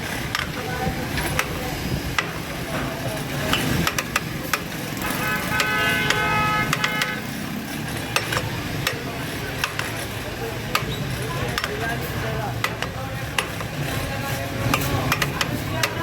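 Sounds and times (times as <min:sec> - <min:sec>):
sharp clicks and knocks: 0:00.0 - 0:16.0
vehicle horn: 0:05.0 - 0:07.4.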